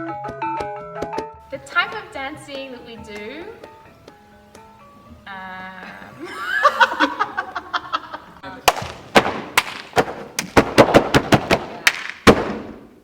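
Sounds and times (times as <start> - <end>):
voices calling out: 5.2 - 8.7
sharp claps: 8.6 - 12.8.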